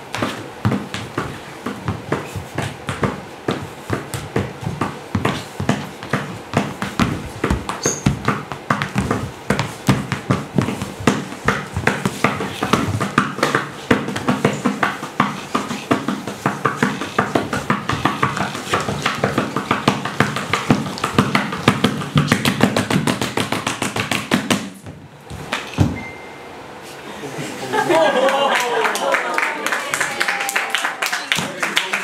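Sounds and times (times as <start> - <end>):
body percussion slaps and claps: 3.9 - 24.8, 28.9 - 32.0.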